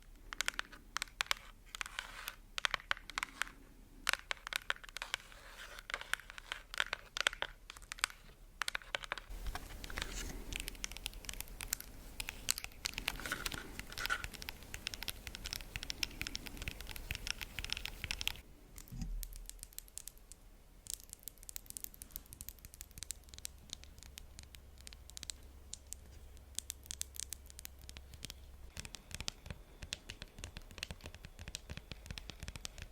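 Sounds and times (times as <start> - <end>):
crinkly plastic scratching: 4.1 - 18.4
fingernail tapping: 20.9 - 32.9.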